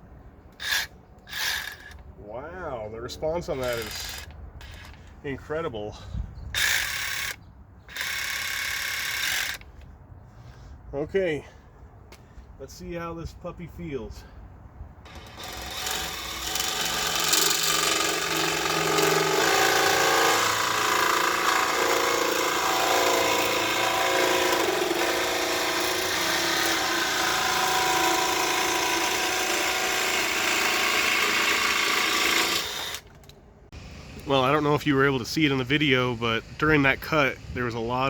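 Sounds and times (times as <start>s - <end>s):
jigsaw cutting through wood: 15.1s - 33.1s.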